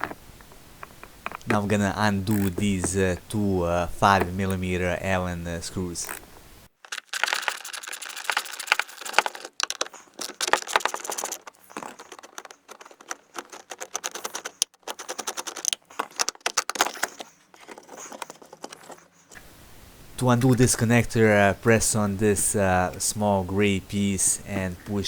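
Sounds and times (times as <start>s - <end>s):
allen key undoing screws: 0.0s - 4.9s, 5.9s - 19.1s
hands handling plastic trim: 0.8s - 4.8s, 6.9s - 19.1s.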